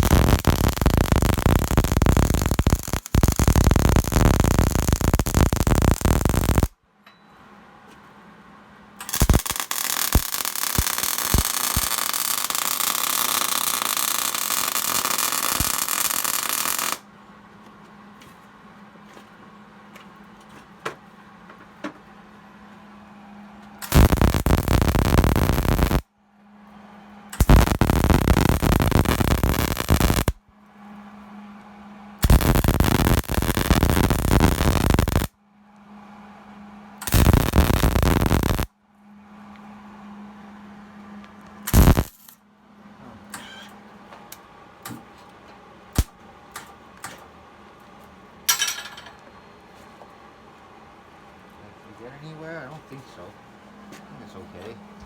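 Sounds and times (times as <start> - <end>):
arc welding crackling: 0.0 - 6.8, 9.0 - 17.0, 23.8 - 26.0, 27.4 - 30.4, 32.2 - 35.3, 37.0 - 38.7, 41.7 - 42.4, 46.0 - 46.2
loud steady noise: 0.0 - 6.8, 23.0 - 26.1, 26.8 - 30.4, 32.2 - 35.4, 37.0 - 38.7, 41.5 - 42.2
low steady hum: 0.0 - 12.8, 17.0 - 55.0.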